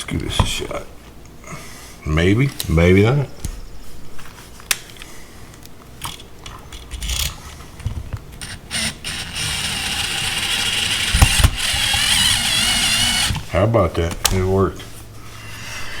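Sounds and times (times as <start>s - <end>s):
cordless drill whirring: 8.4s - 13.4s.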